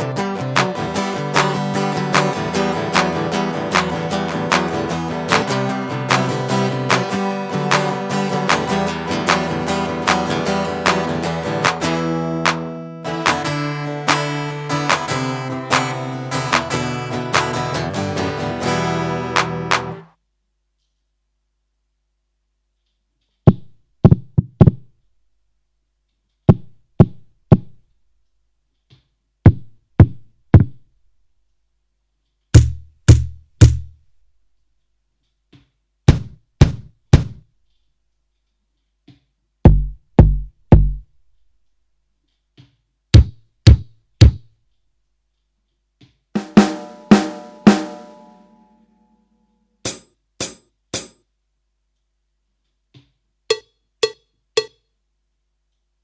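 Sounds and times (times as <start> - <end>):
bass drum thumps: 23.5 - 24.9, 26.5 - 27.8, 29.5 - 30.8, 32.6 - 34.0, 36.1 - 37.5, 39.7 - 41.3, 43.2 - 44.5
ringing pitched percussion tone: 46.4 - 49.2.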